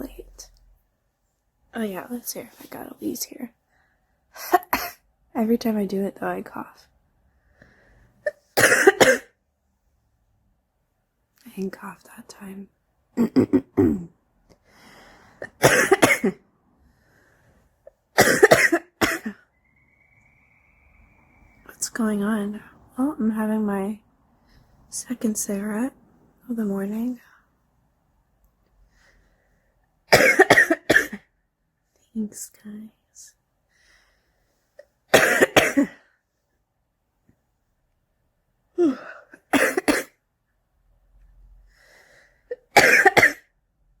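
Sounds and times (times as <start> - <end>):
faint breath: 3.6 - 4.3, 7.3 - 8.2, 14.5 - 15.5, 16.7 - 17.8, 19.4 - 21.8, 24.3 - 24.9, 28.8 - 29.9, 33.7 - 34.8, 41.6 - 42.5
woman coughing: 4.4 - 5.0, 8.3 - 9.4, 13.2 - 14.2, 15.4 - 16.4, 18.2 - 19.4, 30.1 - 31.2, 35.1 - 36.0, 38.8 - 40.2, 42.5 - 43.5
faint breath in: 7.3 - 8.2, 14.6 - 15.5, 16.8 - 17.8, 33.7 - 34.7, 41.6 - 42.5.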